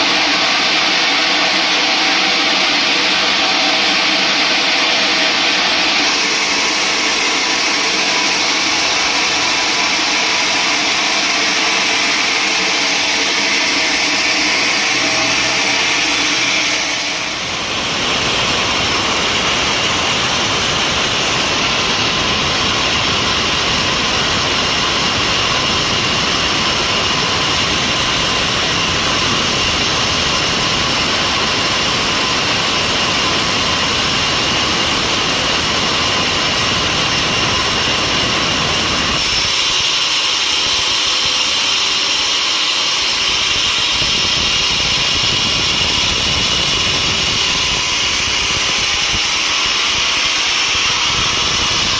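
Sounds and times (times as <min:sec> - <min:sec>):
sawmill machinery running: 0:00.0 - 0:51.9
steady high whine: 0:00.0 - 0:51.9.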